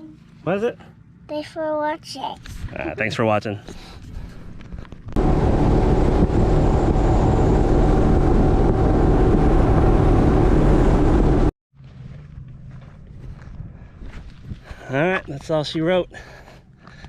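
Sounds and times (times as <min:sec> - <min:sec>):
boat engine: 0:02.0 - 0:13.8
wind buffeting microphone: 0:04.0 - 0:11.5, 0:13.1 - 0:14.9.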